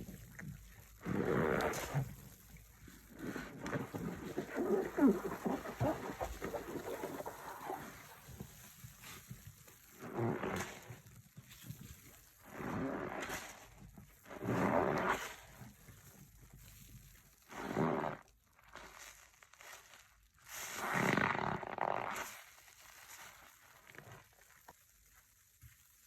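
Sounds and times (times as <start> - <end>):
soft wet rustling: 0.0 - 12.8
foam squelching: 3.0 - 9.3.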